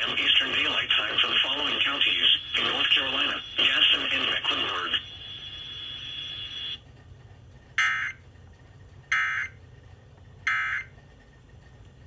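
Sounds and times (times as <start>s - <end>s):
digital tone bursts over radio: 0.0s - 5.4s.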